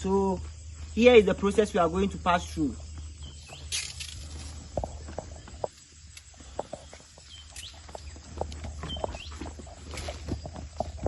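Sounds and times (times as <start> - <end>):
bird chirps: 2.8 - 5.6, 6.7 - 10.1
goat hooves tapping: 2.8 - 11.0.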